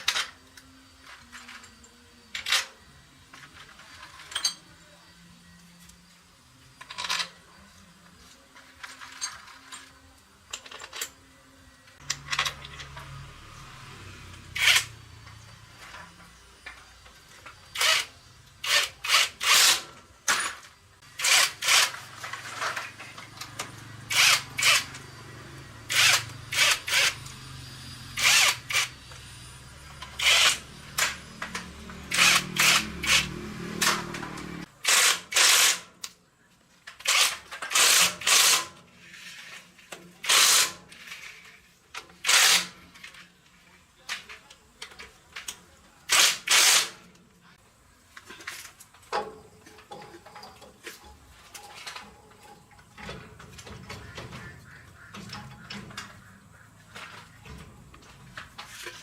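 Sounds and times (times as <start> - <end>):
power tool bursts: 14.3 - 15.0, 17.7 - 36.0, 37.0 - 39.6, 40.2 - 41.4, 42.2 - 43.0, 46.1 - 47.1.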